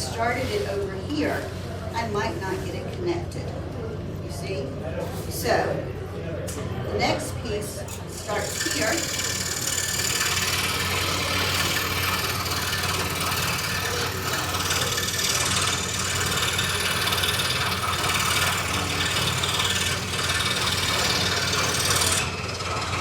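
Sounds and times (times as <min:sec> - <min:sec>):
scroll saw motor hum: 0:07.5 - 0:23.0
saw blade rasping through wood: 0:07.9 - 0:23.0.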